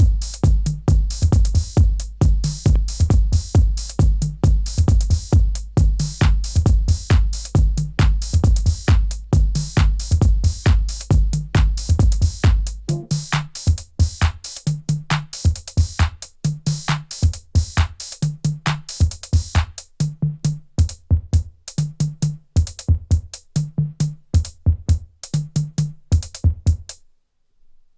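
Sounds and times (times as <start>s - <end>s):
drum machine hits: 0.0s - 14.4s
low bass figure: 1.8s - 3.3s, 12.5s - 13.2s.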